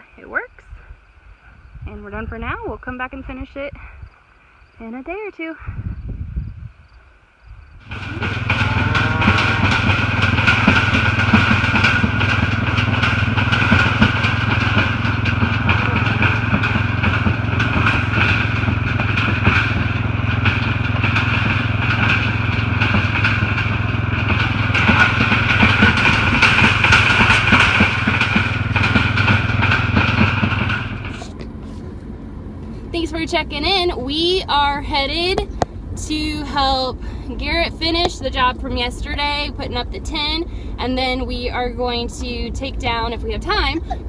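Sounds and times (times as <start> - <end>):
rattle of small clicks: 7.8 - 31.4
vehicle engine running: 7.8 - 44.0.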